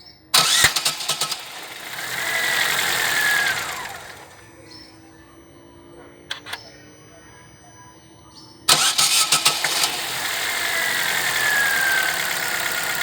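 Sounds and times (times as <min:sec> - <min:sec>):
car engine starting and revving: 0:00.4 - 0:04.6, 0:08.7 - 0:13.0
engine rattling knock: 0:08.8 - 0:13.0.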